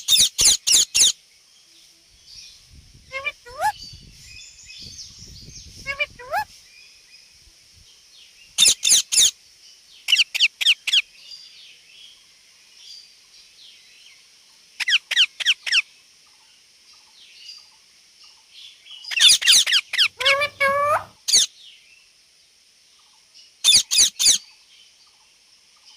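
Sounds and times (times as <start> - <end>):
parrot chirping: 0.0 - 1.2, 3.1 - 3.8, 5.8 - 6.5, 8.6 - 9.3, 10.1 - 11.0, 14.8 - 15.8, 19.1 - 21.5, 23.6 - 24.4.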